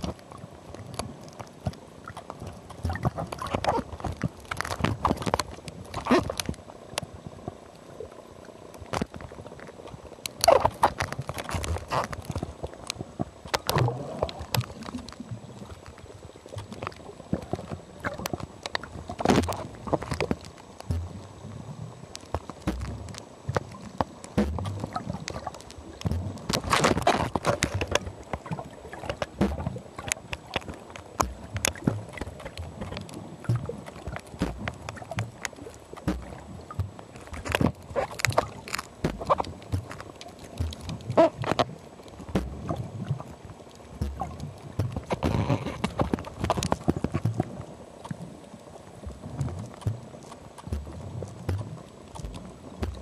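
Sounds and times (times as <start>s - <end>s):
underwater crackling and clicking: 0.0s - 53.0s
bubbling bursts: 13.6s - 15.8s, 16.6s - 21.6s, 22.4s - 47.7s, 49.2s - 53.0s.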